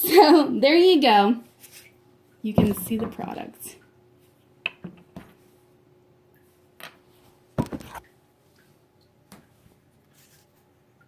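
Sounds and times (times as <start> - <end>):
faint steady hum: 0.0 - 11.0
handling knocks and rustles: 7.6 - 8.1.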